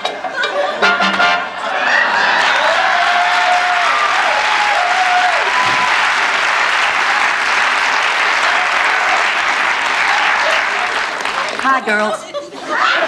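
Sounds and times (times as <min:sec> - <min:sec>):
studio audience applauding: 0:01.8 - 0:12.1.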